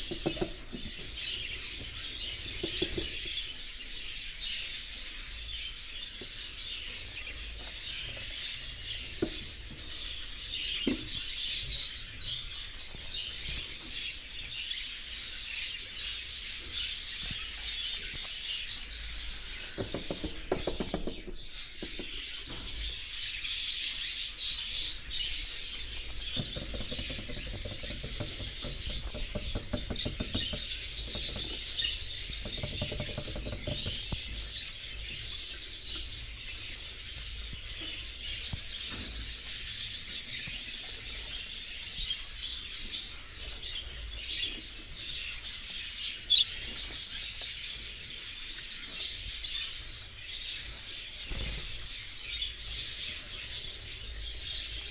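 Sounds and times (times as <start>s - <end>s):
budgerigars chattering: 45.2s - 50.2s.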